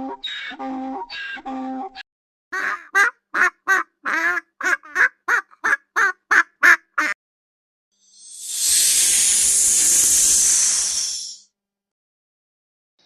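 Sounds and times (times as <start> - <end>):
duck quacking: 2.6 - 7.2
hiss: 8.1 - 11.4.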